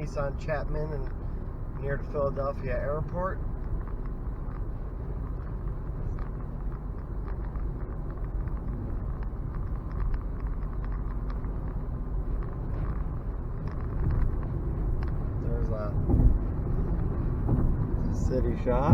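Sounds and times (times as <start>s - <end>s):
road and tyre rumble in car: 0.0s - 18.9s
faint ticks: 3.5s - 15.4s.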